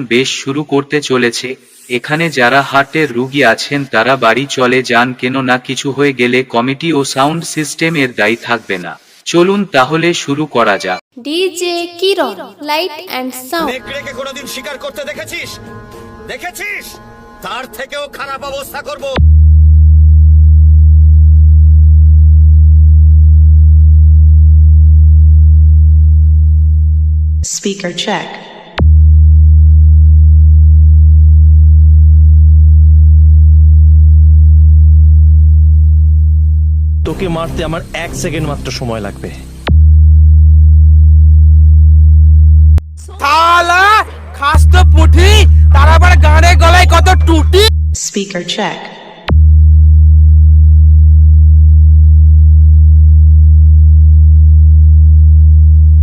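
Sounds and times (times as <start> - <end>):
deep electronic bass tone: 19.2 - 27.4, 28.8 - 37.9, 39.4 - 43.0, 44.5 - 48.0, 49.3 - 56.0.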